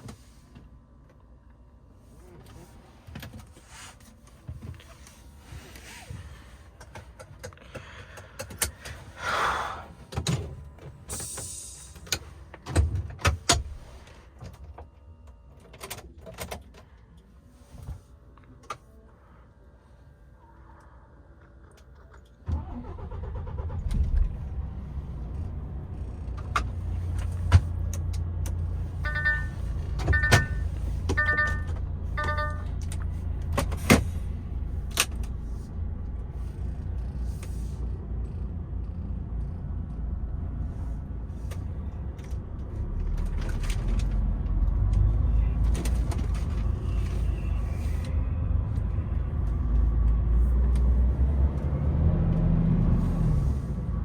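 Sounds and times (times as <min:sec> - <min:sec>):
diesel truck engine rumbling: 0:22.5 - 0:54.0
short electronic beeps: 0:29.0 - 0:32.7.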